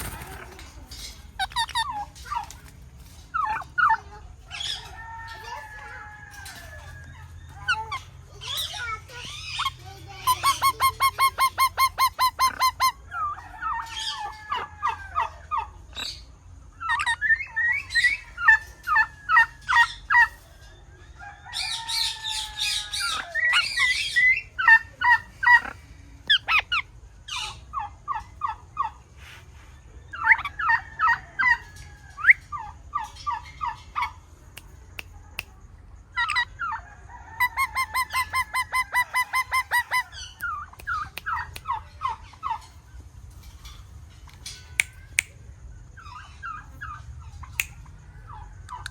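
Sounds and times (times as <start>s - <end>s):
parrot squawking: 1.4s - 2.1s, 8.5s - 13.1s, 36.2s - 36.7s, 37.4s - 41.6s.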